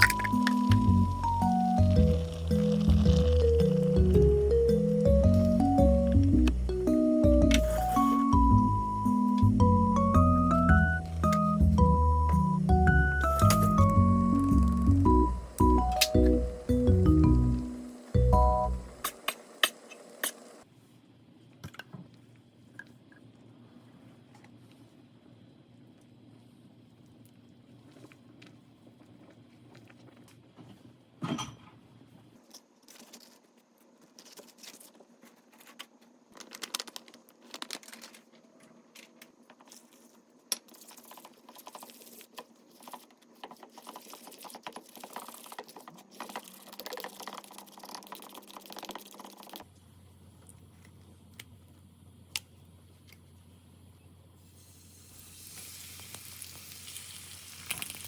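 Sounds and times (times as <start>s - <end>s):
food frying in a pan: 54.5s - 58.0s.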